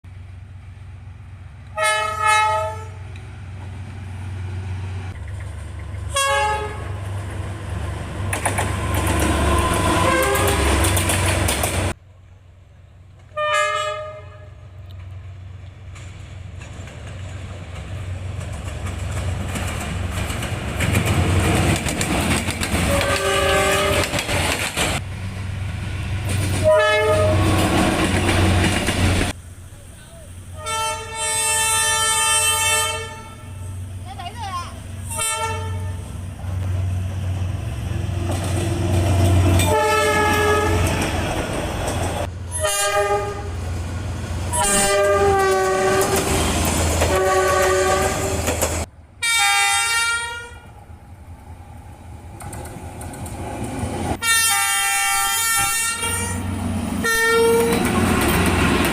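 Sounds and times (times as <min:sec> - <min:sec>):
trains rumbling past: 0:00.1 - 0:58.9
locomotive horn blasts: 0:01.7 - 0:03.0, 0:06.1 - 0:07.0, 0:09.6 - 0:10.9, 0:13.3 - 0:14.7, 0:22.8 - 0:24.2, 0:26.6 - 0:27.8, 0:30.5 - 0:33.7, 0:35.0 - 0:36.2, 0:39.5 - 0:41.0, 0:42.5 - 0:43.6, 0:44.5 - 0:46.4, 0:47.0 - 0:48.4, 0:49.2 - 0:50.7, 0:54.2 - 0:58.1.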